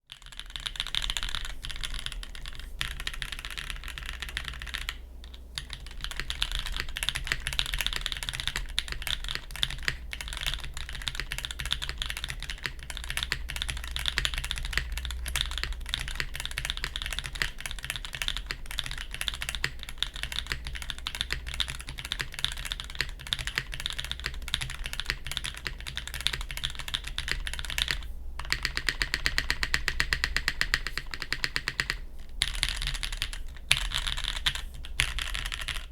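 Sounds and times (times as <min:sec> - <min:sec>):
mechanical keyboard typing: 0:00.1 - 0:35.9.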